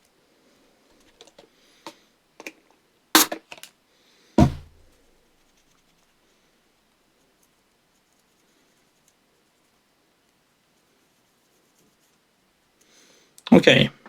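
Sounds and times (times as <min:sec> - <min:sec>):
knocks on workbench: 0:04.4 - 0:04.8.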